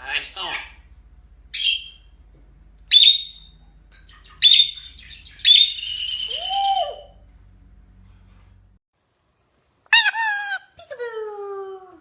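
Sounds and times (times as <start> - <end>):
parrot calling shrilly: 2.9 - 3.6, 4.2 - 7.2.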